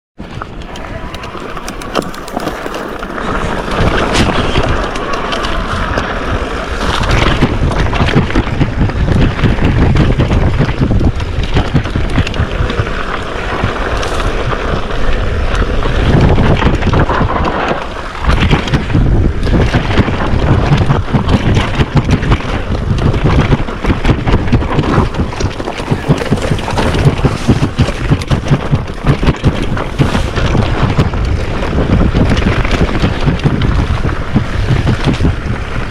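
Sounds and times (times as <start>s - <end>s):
wind buffeting microphone: 0.2s - 35.9s.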